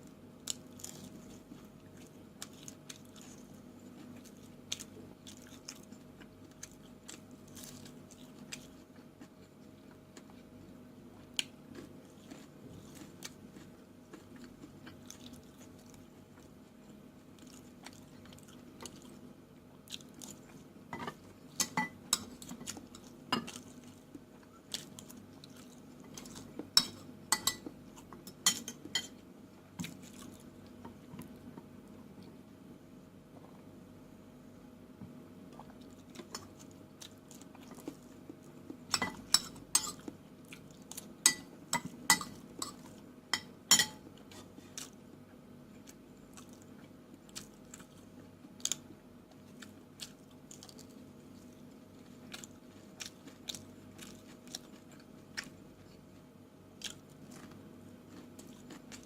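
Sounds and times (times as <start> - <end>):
faint steady hum: 0.0 - 59.0
cutlery clinking on dishes: 43.4 - 44.0
chewing and biting: 45.8 - 56.1, 56.8 - 59.0.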